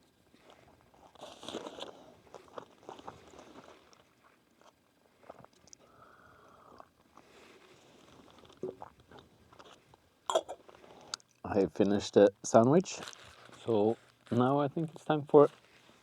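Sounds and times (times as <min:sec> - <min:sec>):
person chewing a sandwich: 0:00.2 - 0:11.4.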